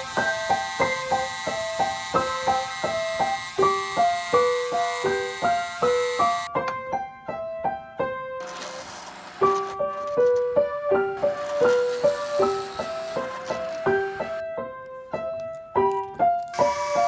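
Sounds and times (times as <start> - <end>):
piano melody: 0.0 - 17.0.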